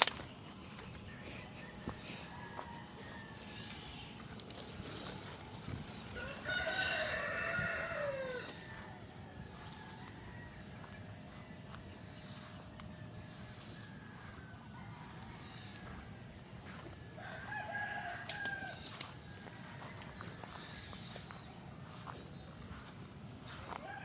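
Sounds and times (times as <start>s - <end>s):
rooster crowing: 1.1s - 4.2s, 6.0s - 11.9s, 12.8s - 20.6s, 22.7s - 24.0s.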